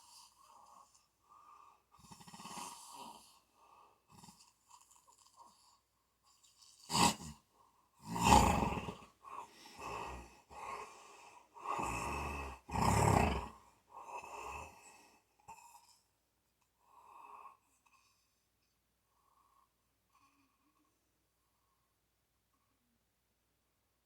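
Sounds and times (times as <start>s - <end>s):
snoring breaths: 0.0s - 16.1s.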